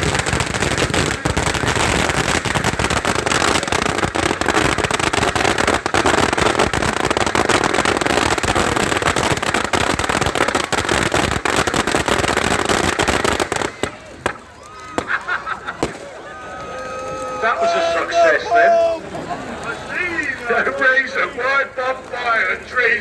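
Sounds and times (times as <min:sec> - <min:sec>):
firecracker bangs with crackle: 0:00.0 - 0:16.2.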